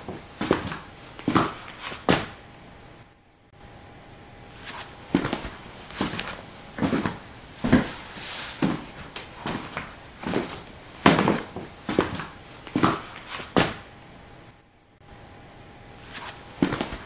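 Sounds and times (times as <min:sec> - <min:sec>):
footsteps indoors: 0:00.0 - 0:02.5, 0:04.6 - 0:13.9, 0:16.0 - 0:17.0.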